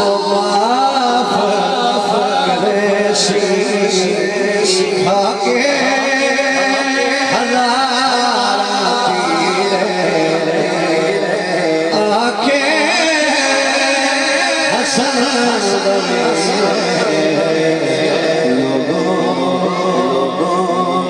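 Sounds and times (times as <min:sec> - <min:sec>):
man singing religious song: 0:00.0 - 0:21.0.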